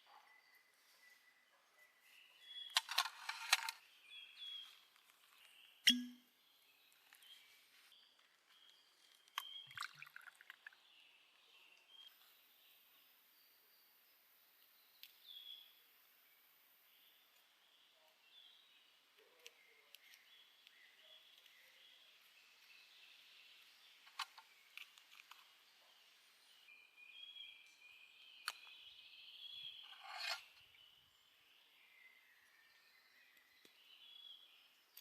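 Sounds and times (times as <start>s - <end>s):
bird chirps: 3.9s - 10.8s.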